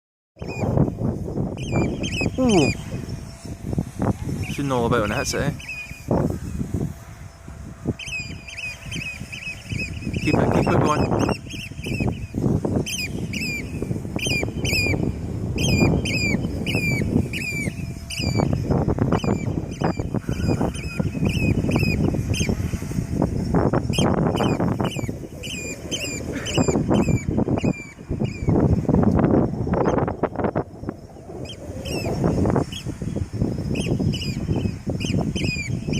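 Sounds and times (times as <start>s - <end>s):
bird calling sharply: 1.6s - 3.1s.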